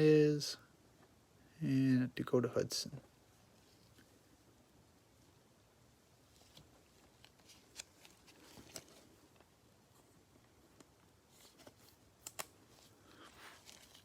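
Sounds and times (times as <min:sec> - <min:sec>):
cards rustling: 0:06.3 - 0:09.5, 0:10.7 - 0:14.0.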